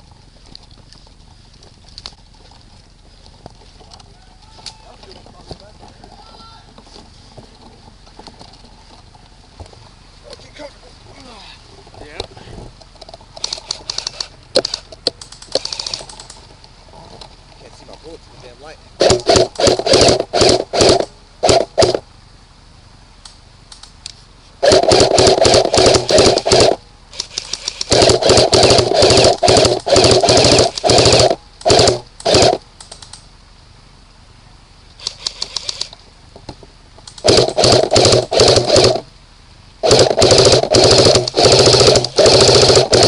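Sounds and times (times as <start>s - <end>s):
airsoft gun firing bursts: 19.0s - 22.0s, 24.6s - 32.6s, 37.2s - 39.1s, 39.8s - 43.0s.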